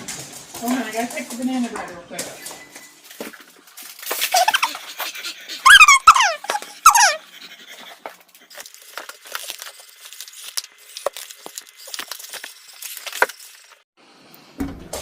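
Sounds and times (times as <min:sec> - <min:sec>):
dog squealing: 0:04.3 - 0:07.9
dog panting: 0:04.4 - 0:08.5.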